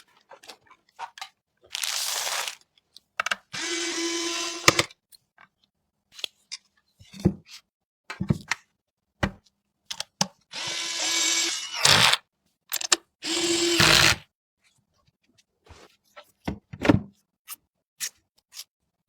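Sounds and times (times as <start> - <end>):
electric screwdriver running: 3.6 - 4.9, 10.6 - 12.2, 13.2 - 14.2.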